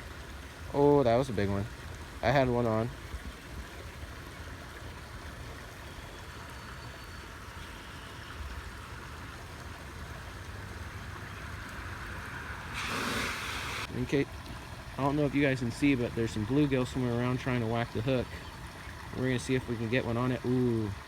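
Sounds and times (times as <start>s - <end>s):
even hiss: 12.6s - 14.2s.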